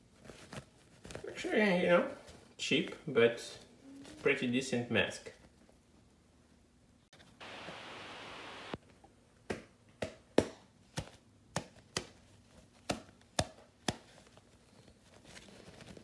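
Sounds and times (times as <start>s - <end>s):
steady hiss: 7.4s - 8.8s.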